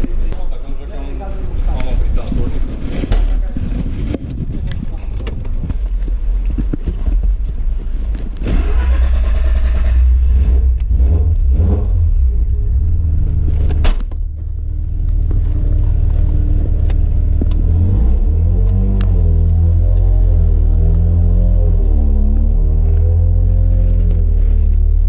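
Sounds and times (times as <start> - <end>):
rotary engine revving: 8.4 - 14.4, 15.2 - 25.0.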